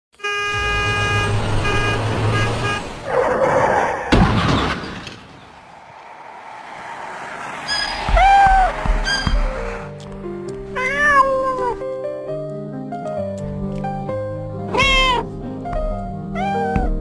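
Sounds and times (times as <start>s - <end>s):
vehicle horn honking: 0.2s - 3.1s
low engine hum: 0.5s - 3.1s
loud thump: 4.1s - 5.6s
cat meowing: 10.8s - 11.8s, 14.7s - 15.3s, 16.4s - 17.0s.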